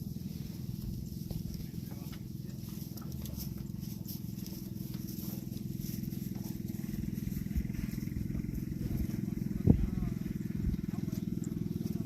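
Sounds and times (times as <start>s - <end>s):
small engine humming: 0.0s - 12.0s.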